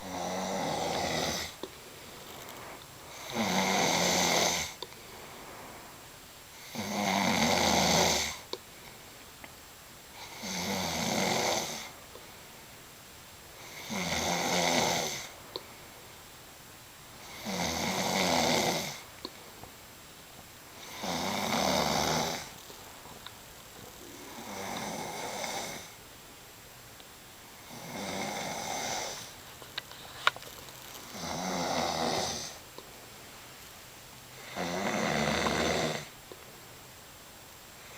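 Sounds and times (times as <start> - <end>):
man snoring: 0.0 - 1.6, 3.1 - 4.8, 6.5 - 8.4, 10.2 - 11.9, 13.6 - 15.4, 17.2 - 19.0, 20.8 - 22.6, 24.0 - 26.0, 27.6 - 29.3, 31.1 - 32.6, 34.4 - 36.1
quiet breathing: 0.0 - 6.8, 13.5 - 26.1, 27.4 - 37.0.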